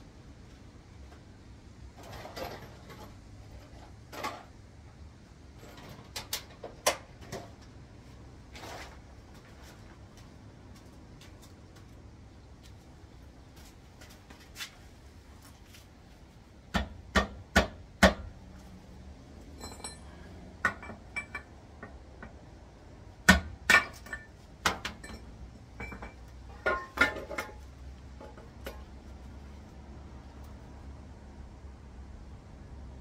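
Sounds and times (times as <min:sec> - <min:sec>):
metal parts clinking: 0:19.6 - 0:20.2.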